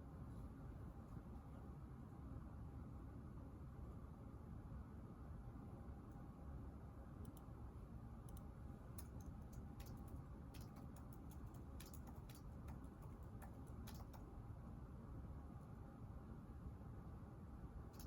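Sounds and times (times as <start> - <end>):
low room hum: 0.0 - 18.0
soft typing on a keyboard: 7.2 - 7.6, 8.2 - 14.4.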